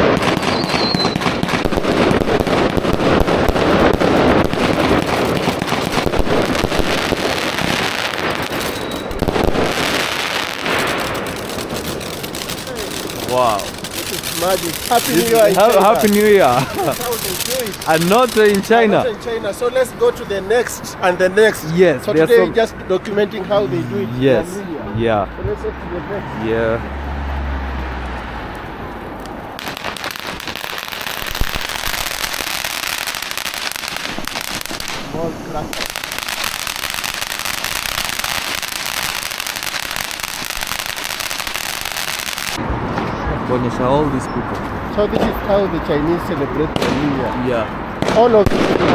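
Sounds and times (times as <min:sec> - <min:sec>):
loud firecracker bang: 0:00.0 - 0:18.8, 0:46.7 - 0:48.9
fireworks bangs and crackles: 0:00.0 - 0:23.6, 0:28.5 - 0:48.9.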